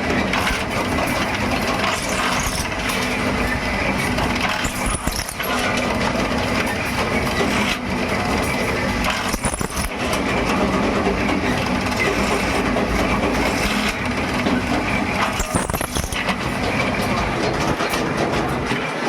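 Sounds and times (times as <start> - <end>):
workshop machinery running: 0.0 - 19.0.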